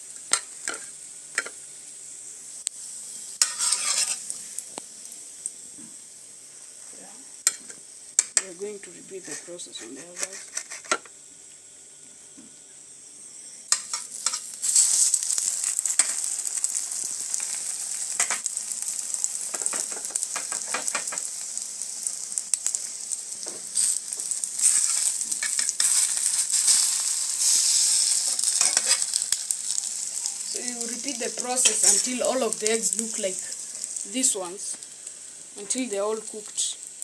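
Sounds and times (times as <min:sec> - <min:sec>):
bread sizzling in hot oil: 0:00.0 - 0:37.0
spatula tapping and scraping pan: 0:03.4 - 0:04.2, 0:19.5 - 0:21.3, 0:28.4 - 0:29.3.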